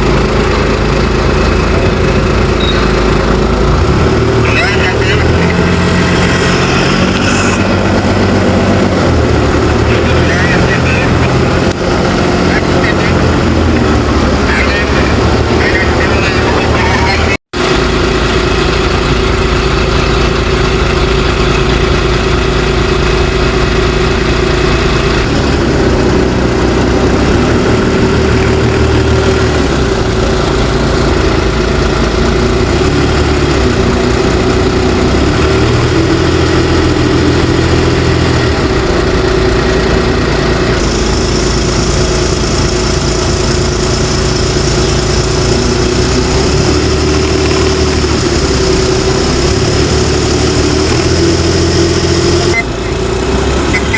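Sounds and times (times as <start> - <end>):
heavy machinery engine idling: 0.0 - 53.9.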